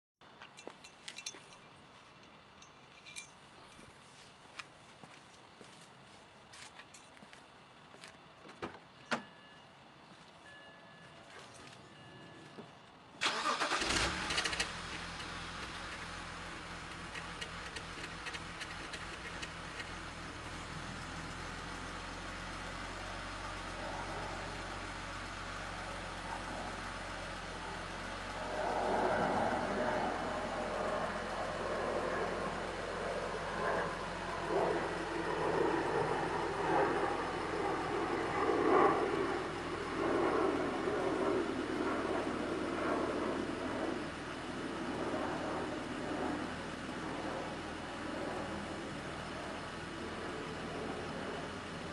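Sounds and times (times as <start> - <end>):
car engine cranking and starting: 13.2 - 28.3
car engine idling: 13.2 - 51.9.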